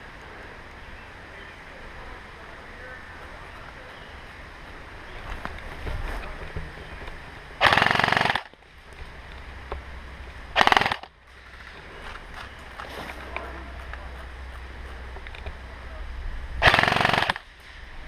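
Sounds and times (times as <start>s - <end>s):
airsoft gun firing full-auto: 7.6s - 8.5s, 10.6s - 11.1s, 16.6s - 17.5s.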